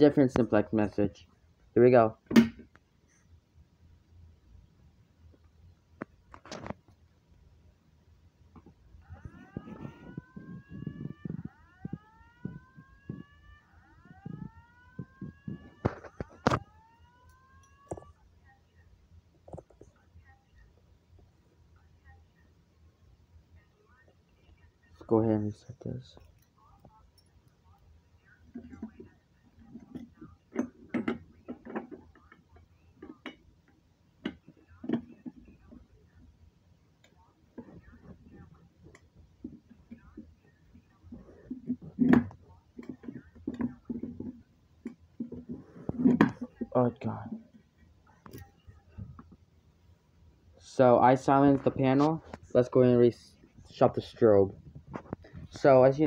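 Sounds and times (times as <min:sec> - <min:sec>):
fire alarm whoop tone: 0:09.0 - 0:18.1.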